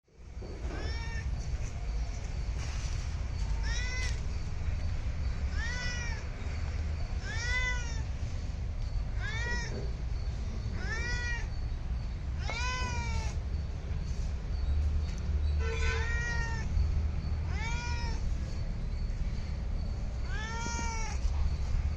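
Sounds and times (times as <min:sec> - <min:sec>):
cat meowing: 0:00.6 - 0:01.5, 0:03.6 - 0:04.3, 0:05.5 - 0:06.3, 0:07.2 - 0:08.1, 0:09.1 - 0:10.0, 0:10.7 - 0:11.6, 0:12.4 - 0:13.4, 0:15.6 - 0:16.8, 0:17.4 - 0:18.4, 0:20.2 - 0:21.3.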